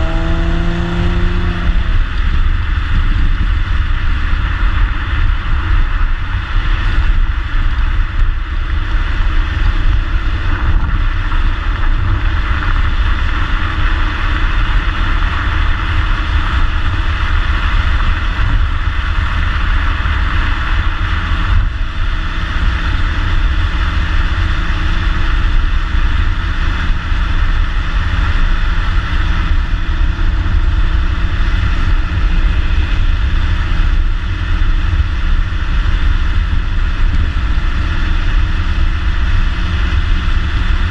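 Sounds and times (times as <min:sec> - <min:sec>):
steady low tone: 0:00.0 - 0:13.4
car engine driving: 0:00.0 - 0:40.9
road and wind noise: 0:00.0 - 0:40.9.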